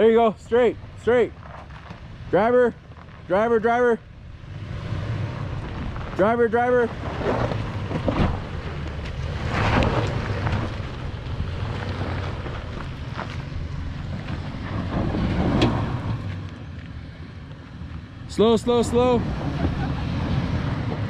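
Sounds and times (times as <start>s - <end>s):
vehicle engine running low: 0.0s - 21.0s
crackles and knocks: 6.9s - 18.0s.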